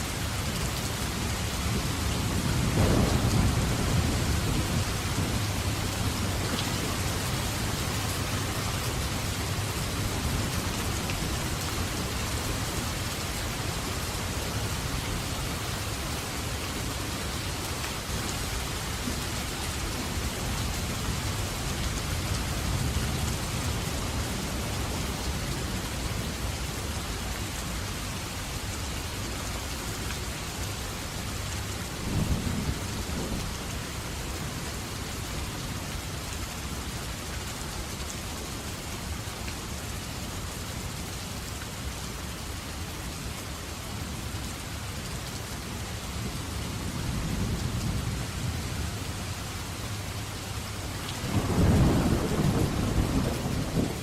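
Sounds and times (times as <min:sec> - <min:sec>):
steady rain falling: 0:00.0 - 0:54.0
thunder rumbling: 0:01.6 - 0:12.4, 0:51.2 - 0:54.0.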